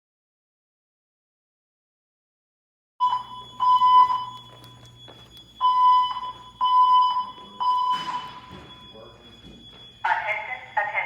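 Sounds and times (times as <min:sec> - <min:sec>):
alarm beeping: 0:03.0 - 0:11.0.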